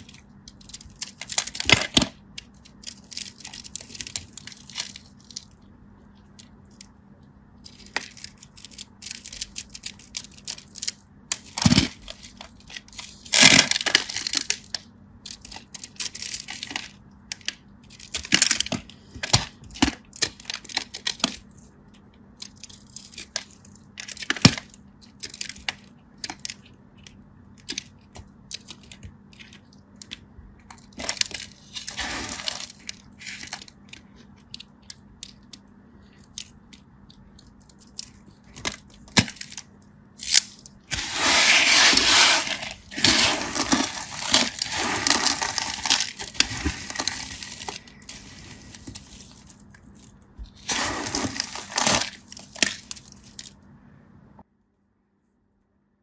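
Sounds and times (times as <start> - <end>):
sharp cracks and snaps: 0.0 - 7.0, 7.6 - 41.1
crinkling and tearing: 22.4 - 53.6.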